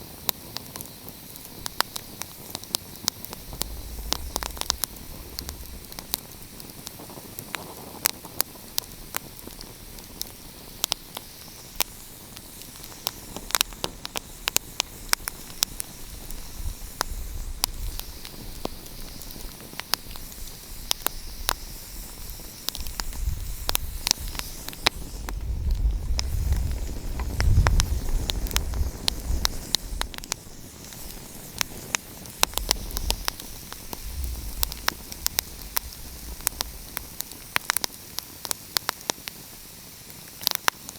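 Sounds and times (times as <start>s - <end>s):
wood fire crackling and popping: 0.0s - 40.9s
low rumble: 3.2s - 7.0s, 32.4s - 37.7s.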